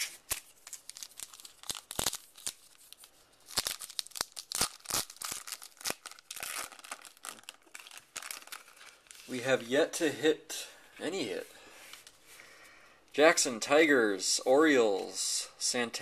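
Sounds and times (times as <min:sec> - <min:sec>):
wrapper crinkling: 0:00.0 - 0:09.7.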